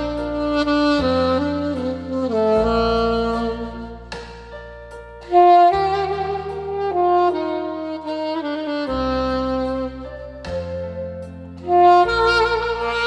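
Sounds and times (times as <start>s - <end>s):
saxophone melody: 0.0s - 13.0s.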